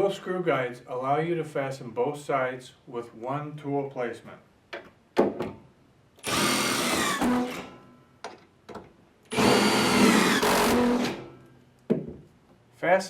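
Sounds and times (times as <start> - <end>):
power drill driving screws: 6.2 - 7.8, 9.3 - 11.3.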